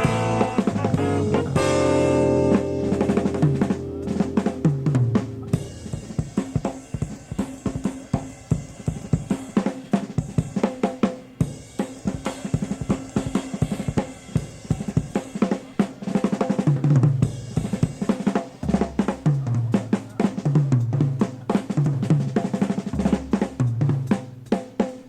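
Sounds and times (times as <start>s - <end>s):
bass line: 0.0s - 6.2s
drum kit fills and rolls: 0.0s - 25.0s
jazz-fusion band: 0.0s - 25.0s.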